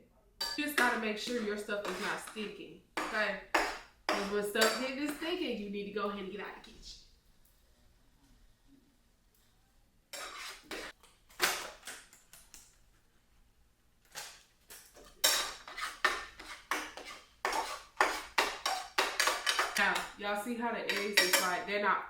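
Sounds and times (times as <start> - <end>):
utensil scraping a pan: 0.4 - 5.3, 10.1 - 12.0, 14.1 - 20.2, 20.9 - 21.6.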